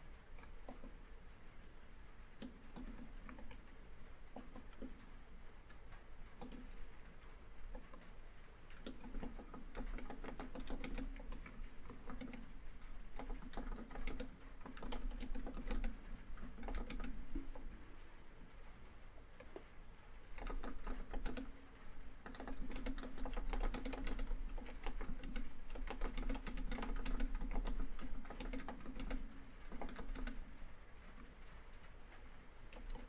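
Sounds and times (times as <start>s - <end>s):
faint rain on a tin roof: 0.0s - 33.0s
laptop keyboard typing: 0.4s - 1.0s, 2.4s - 3.7s, 4.3s - 5.1s, 5.7s - 6.8s, 7.6s - 8.0s, 8.7s - 17.8s, 20.2s - 21.6s, 22.2s - 30.6s, 32.7s - 33.0s.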